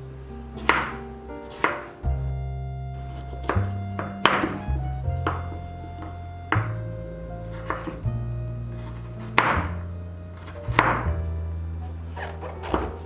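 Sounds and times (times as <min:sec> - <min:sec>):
light background music: 0:00.0 - 0:13.0
knife chopping on cutting board: 0:00.6 - 0:02.0, 0:03.0 - 0:06.8, 0:07.5 - 0:08.0, 0:08.7 - 0:09.8, 0:10.4 - 0:11.2.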